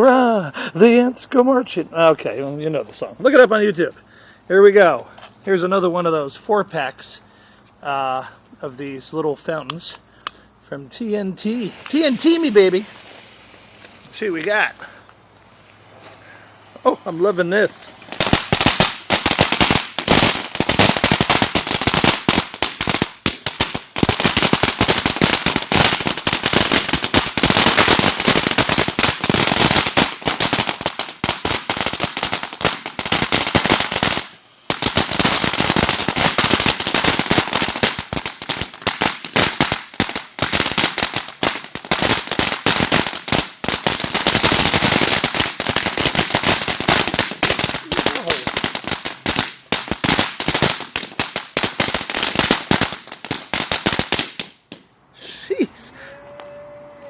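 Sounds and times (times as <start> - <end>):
firework hissing: 0.0 - 56.2
firework crackling pops: 8.6 - 55.0.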